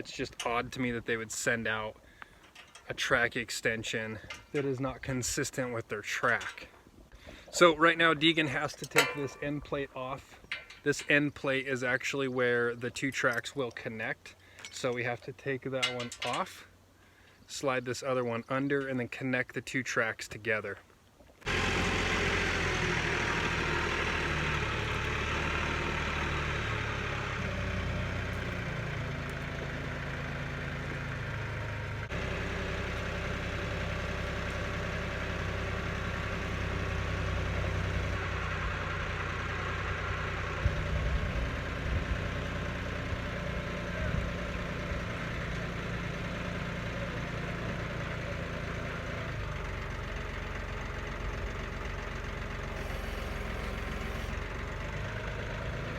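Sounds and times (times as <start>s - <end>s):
short metallic knocks: 8.8s - 9.6s
engine idling: 21.5s - 37.8s, 49.5s - 55.9s.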